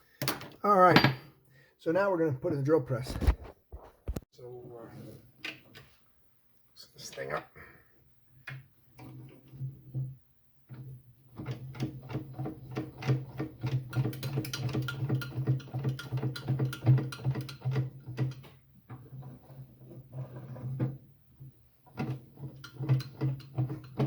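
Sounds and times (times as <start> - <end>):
metallic clicking and rattling: 11.4 - 18.5, 22.0 - 24.0.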